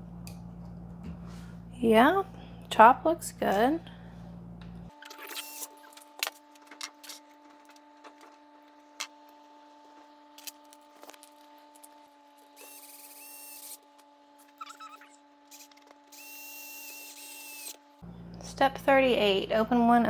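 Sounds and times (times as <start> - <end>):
faint steady hum: 0.0 - 14.0, 14.6 - 20.0
plastic parts clicking and rubbing: 5.0 - 12.9.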